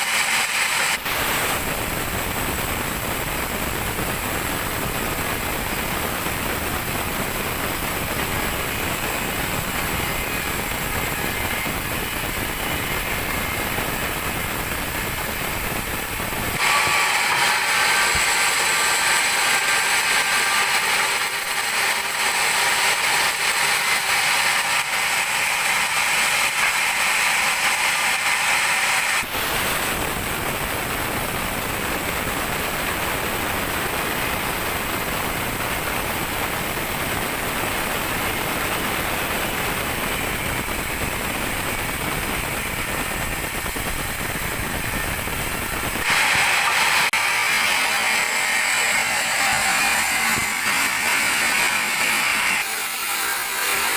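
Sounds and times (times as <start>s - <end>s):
bandsaw cutting a log: 0.0s - 1.7s, 8.1s - 29.9s, 45.9s - 53.9s.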